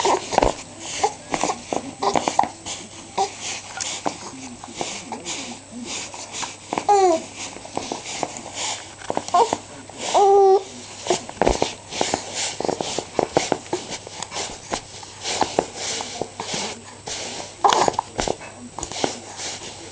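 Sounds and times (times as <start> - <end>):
baby vocal sound: 6.8 - 7.4, 9.3 - 10.7.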